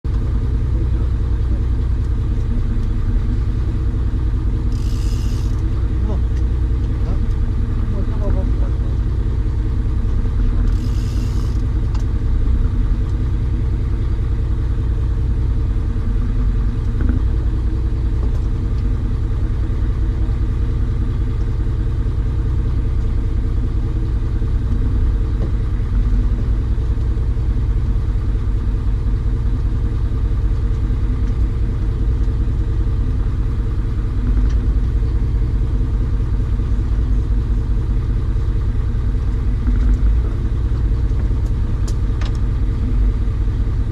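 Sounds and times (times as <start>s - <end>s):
engine running: 0.0s - 43.9s.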